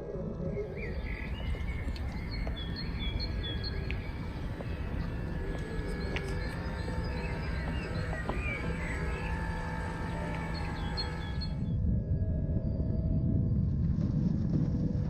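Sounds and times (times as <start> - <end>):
steady low rumble: 0.0 - 15.0
small birds chirping: 0.4 - 11.8.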